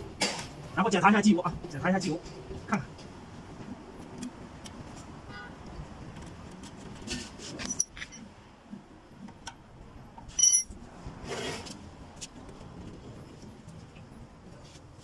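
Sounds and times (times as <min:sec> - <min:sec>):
sharp metallic clink: 0:10.4 - 0:10.8.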